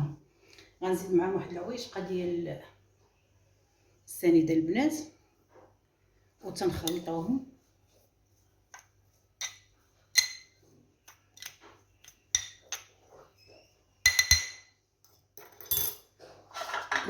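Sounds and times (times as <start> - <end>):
spoon clinking against bowl: 9.4 - 12.9, 14.1 - 14.7.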